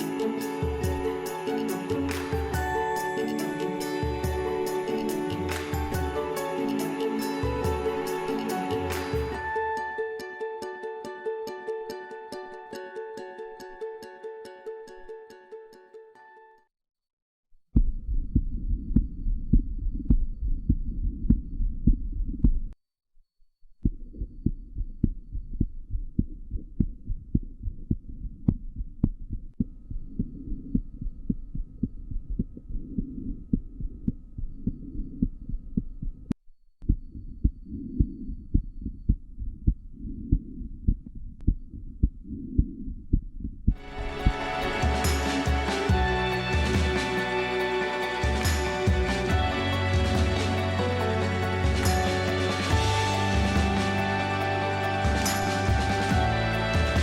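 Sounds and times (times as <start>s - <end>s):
heartbeat through stethoscope: 17.8s - 22.8s, 23.8s - 43.8s.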